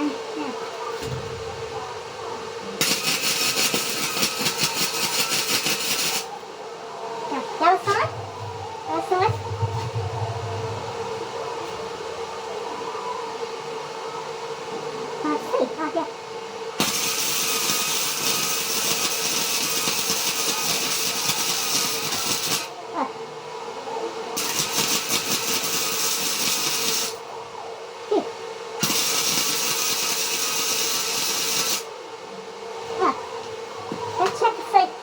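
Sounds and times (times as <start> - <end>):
steady hum: 0.0 - 4.6, 6.2 - 16.9
arc welder crackling hiss: 2.8 - 6.3, 16.8 - 22.8, 24.4 - 27.2, 28.8 - 31.9.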